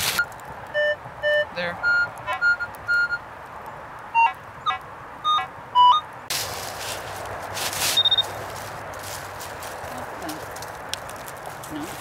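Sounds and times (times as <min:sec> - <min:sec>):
rough rustling and scraping: 0:00.0 - 0:00.6, 0:06.3 - 0:12.0
metal detector beeps: 0:00.1 - 0:03.2, 0:04.2 - 0:06.1, 0:07.9 - 0:08.3.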